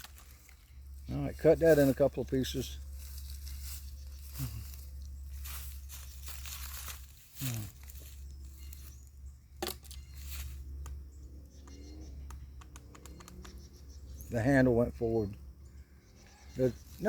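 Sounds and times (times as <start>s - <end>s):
sticks crackling and rustling: 0.0s - 0.7s, 1.3s - 11.0s
sharp click: 11.6s - 13.6s.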